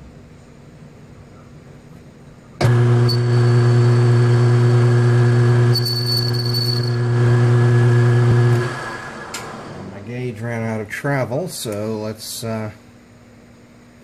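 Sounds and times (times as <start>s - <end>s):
thin high whine: 2.5s - 8.9s
lathe motor humming: 2.6s - 6.0s, 6.8s - 10.1s.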